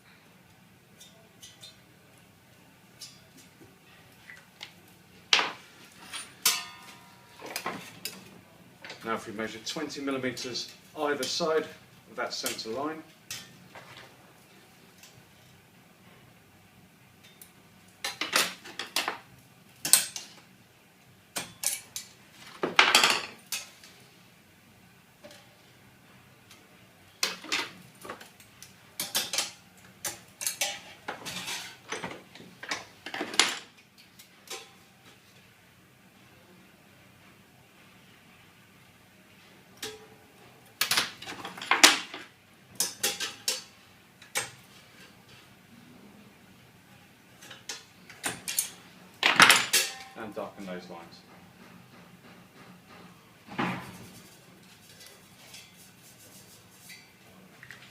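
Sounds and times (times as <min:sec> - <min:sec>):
tools clinking on steel tray: 0:06.0 - 0:08.2, 0:47.4 - 0:50.2.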